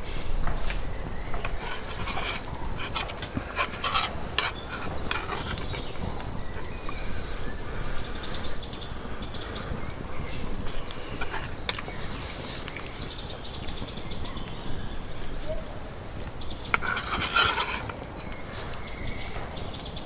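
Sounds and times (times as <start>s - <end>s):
metal utensils clinking on cookware: 1.4s - 6.2s, 11.1s - 12.2s, 16.8s - 18.0s.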